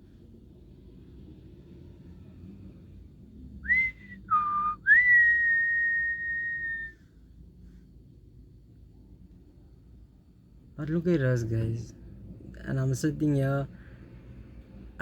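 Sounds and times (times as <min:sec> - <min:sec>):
person whistling: 0:03.7 - 0:06.9.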